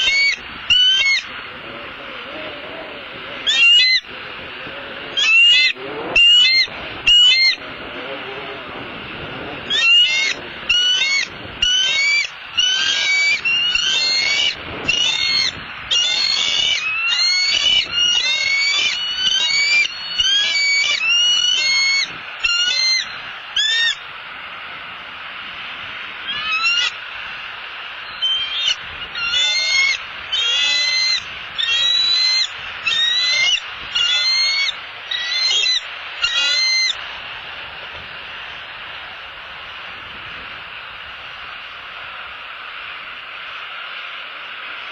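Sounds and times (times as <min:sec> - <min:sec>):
eagle high piping calls: 0:00.0 - 0:24.1, 0:25.8 - 0:40.6.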